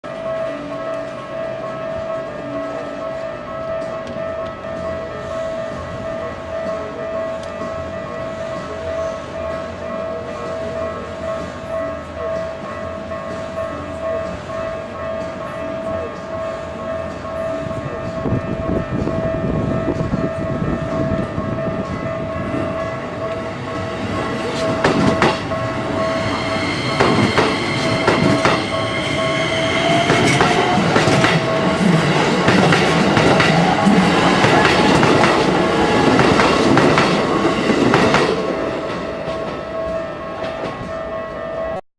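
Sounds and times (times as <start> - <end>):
level-crossing warning bell: 0.0 - 41.8
electric train rumble: 0.1 - 41.8
train wheels clattering over rail joints: 24.2 - 25.6.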